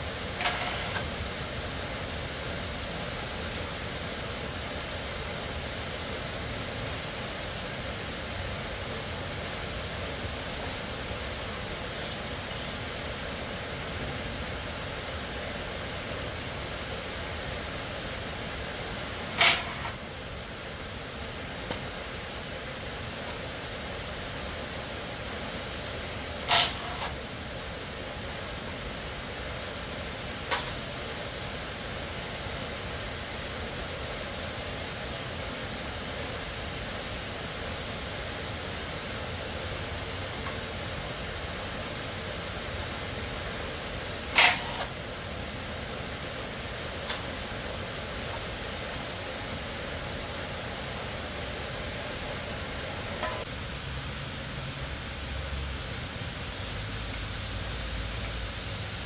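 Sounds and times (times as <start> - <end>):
steady hiss: 0.0 - 59.0.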